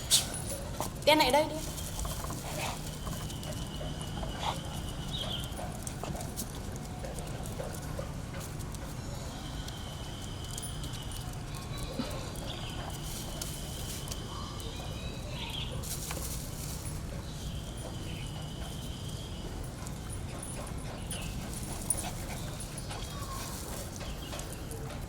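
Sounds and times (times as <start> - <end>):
dogs whining: 9.1 - 15.9, 17.8 - 25.0.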